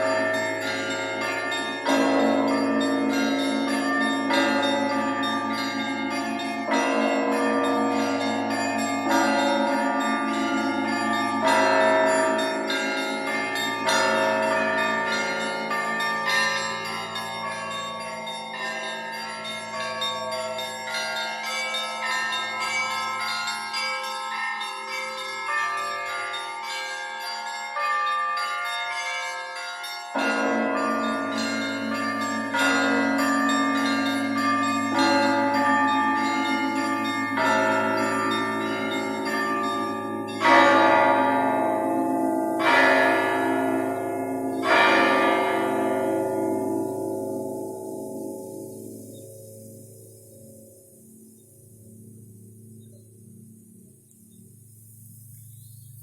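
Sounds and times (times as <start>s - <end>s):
church bells ringing: 0.0s - 51.0s.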